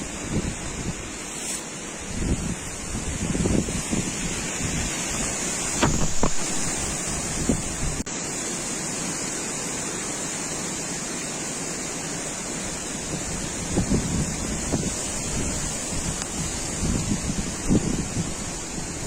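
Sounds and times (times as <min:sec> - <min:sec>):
wind buffeting microphone: 0:02.0 - 0:08.1, 0:13.0 - 0:19.0.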